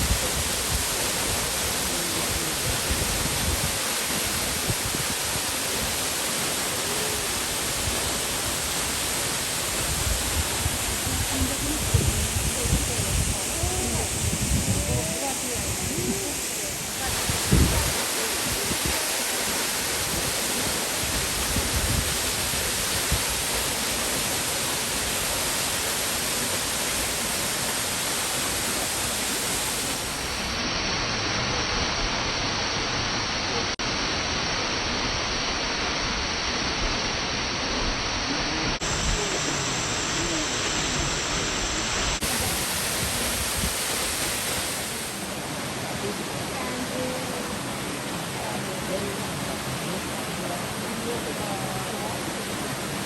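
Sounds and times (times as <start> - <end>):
waterfall rushing: 0.0 - 53.0.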